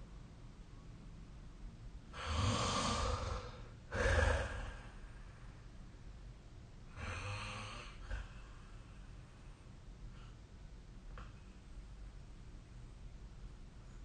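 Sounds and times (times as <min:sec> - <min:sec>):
person snoring: 0:02.2 - 0:05.0, 0:06.9 - 0:08.4.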